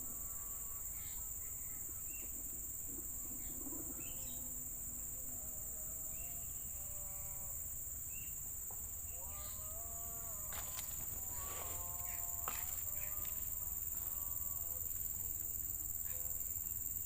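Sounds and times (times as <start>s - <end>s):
drawn-out pitched calls: 0.0s - 8.4s, 9.0s - 15.3s
insects droning: 0.0s - 17.0s.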